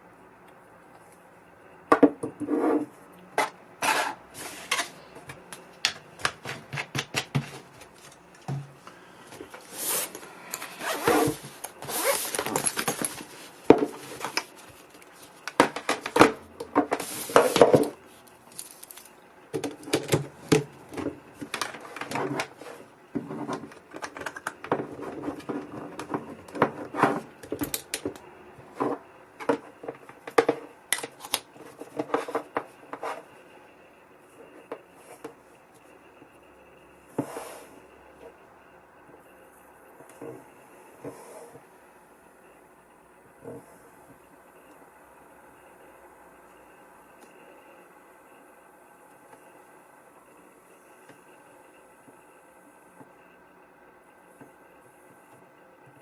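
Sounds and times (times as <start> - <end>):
packaging rustling: 9.4 - 16.2, 17.0 - 19.2.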